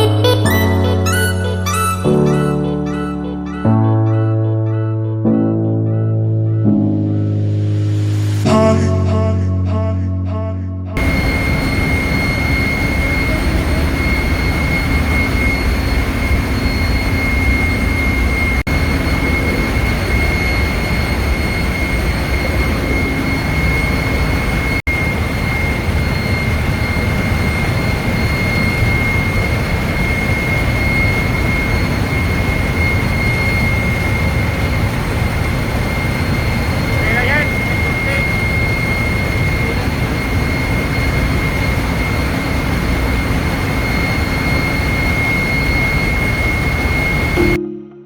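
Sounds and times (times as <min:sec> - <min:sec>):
engine room machinery din: 0:11.0 - 0:48.0
high-pitched machinery whine: 0:11.0 - 0:48.0.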